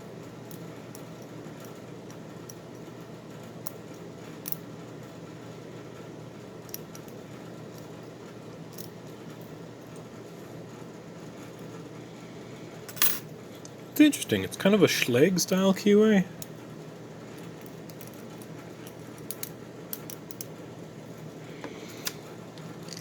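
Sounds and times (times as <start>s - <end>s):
steady background hiss: 12.0s - 18.2s.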